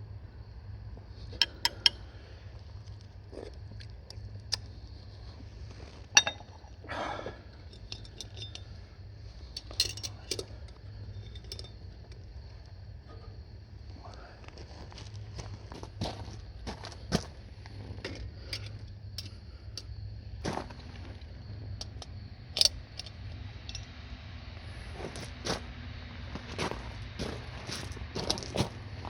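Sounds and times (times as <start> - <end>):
steady low hum: 0.0 - 29.0
metal cookware clinking: 6.2 - 6.6.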